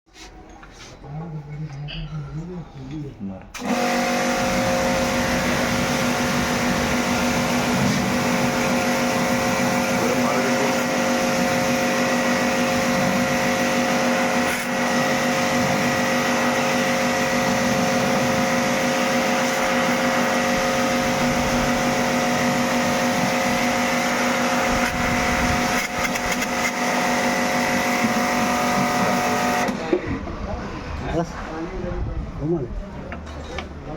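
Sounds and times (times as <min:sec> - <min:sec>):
small electric motor whining: 0:03.6 - 0:29.8.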